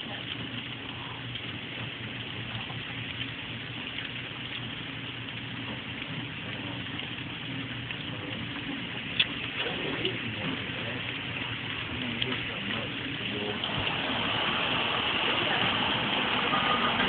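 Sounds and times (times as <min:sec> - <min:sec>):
rushing water: 0:00.0 - 0:17.0
heavy rain: 0:08.0 - 0:17.0.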